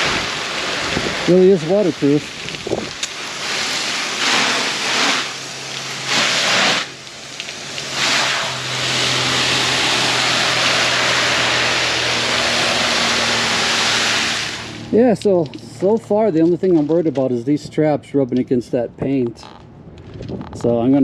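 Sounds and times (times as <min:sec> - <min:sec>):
hose spraying on canvas tent: 0:00.0 - 0:15.0.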